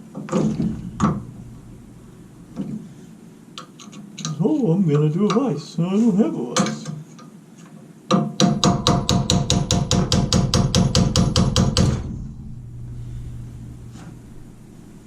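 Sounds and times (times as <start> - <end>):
faint low hum: 0.0 - 7.2, 8.4 - 15.0
hammer striking metal: 0.3 - 3.8, 8.1 - 12.8.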